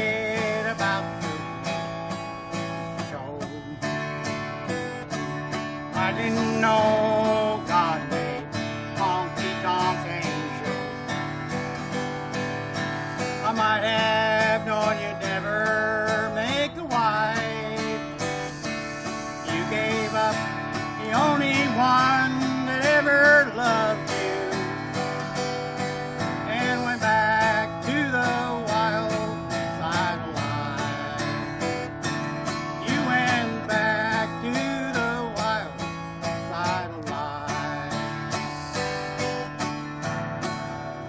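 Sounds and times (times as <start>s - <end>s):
acoustic guitar strumming: 0.0s - 41.0s.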